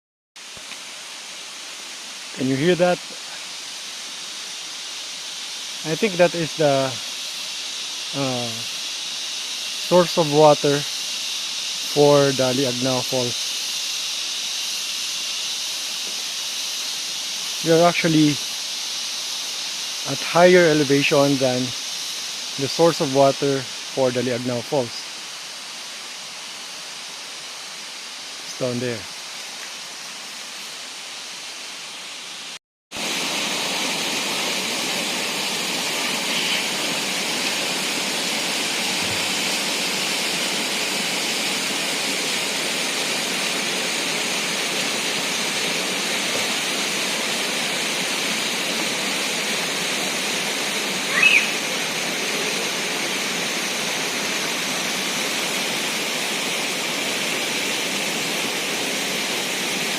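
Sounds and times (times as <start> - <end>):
waterfall rushing: 0.4 - 13.6, 14.2 - 18.5, 19.5 - 25.2, 28.2 - 29.1, 33.0 - 59.9
high chirp: 51.1 - 51.7.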